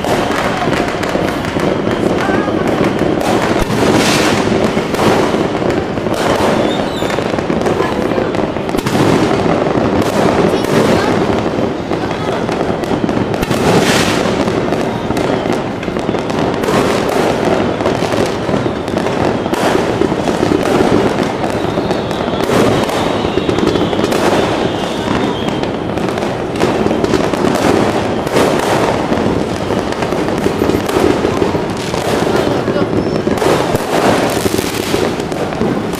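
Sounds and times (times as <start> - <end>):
fireworks bangs and crackles: 0.0 - 35.9
faint high whistle: 21.5 - 25.7.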